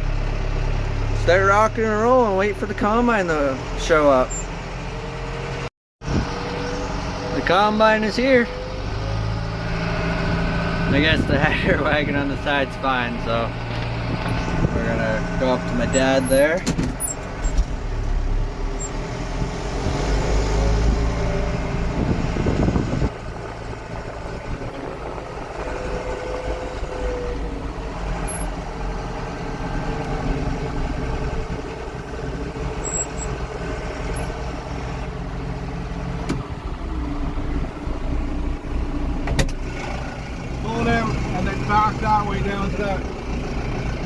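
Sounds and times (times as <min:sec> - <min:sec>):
farm machinery engine running: 0:09.0 - 0:19.2, 0:19.8 - 0:44.0.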